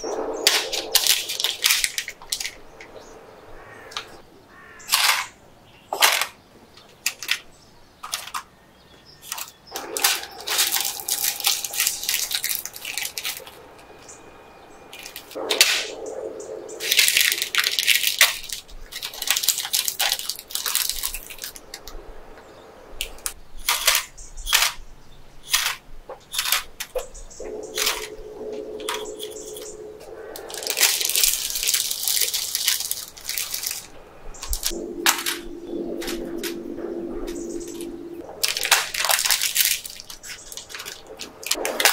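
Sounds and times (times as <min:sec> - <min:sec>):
plastic wrappers crinkling: 0:00.5 - 0:02.6, 0:09.3 - 0:13.6, 0:16.8 - 0:22.0, 0:30.4 - 0:35.4, 0:38.2 - 0:41.9.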